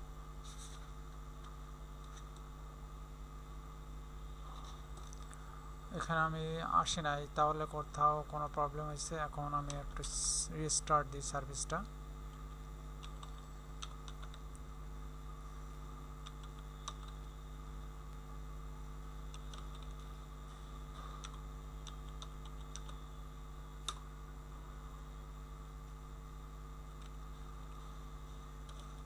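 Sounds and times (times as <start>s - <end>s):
electrical hum: 0.0s - 29.0s
keyboard keystrokes: 21.2s - 23.0s.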